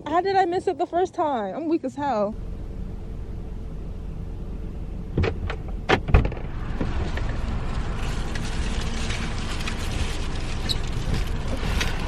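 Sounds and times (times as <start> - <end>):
car engine and fan humming: 0.0 - 12.0
knocks and clicks inside car: 5.1 - 6.9.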